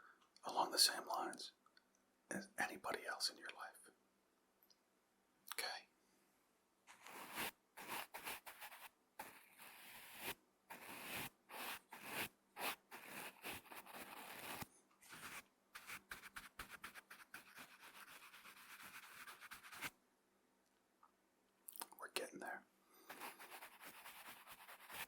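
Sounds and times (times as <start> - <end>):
brush bristles scratching microphone: 6.9 - 19.9, 23.1 - 25.0.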